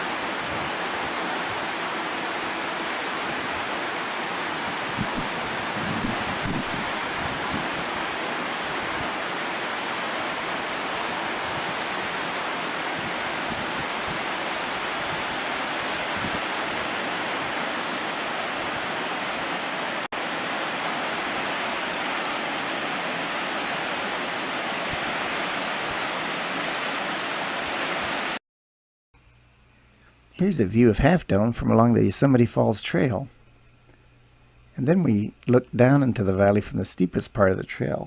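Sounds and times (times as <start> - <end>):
waterfall rushing: 0.0 - 28.4.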